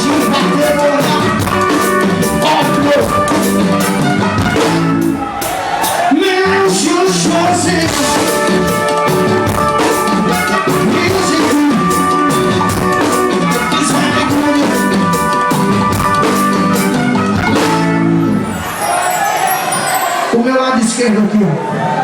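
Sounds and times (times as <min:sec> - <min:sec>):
person singing: 0:00.0 - 0:03.1, 0:06.1 - 0:08.6, 0:10.3 - 0:12.5, 0:13.1 - 0:15.4
steady drum beat: 0:00.0 - 0:18.1
live band playing: 0:00.0 - 0:21.3.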